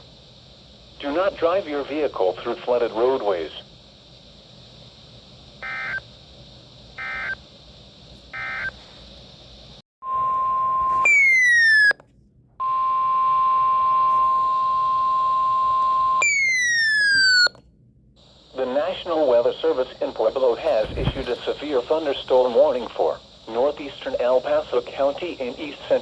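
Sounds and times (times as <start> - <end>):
steady warning alarm tone: 5.6 - 6.1, 7.0 - 7.4, 8.3 - 8.8, 10.0 - 12.0, 12.6 - 17.6
digital data bursts: 7.0 - 7.4.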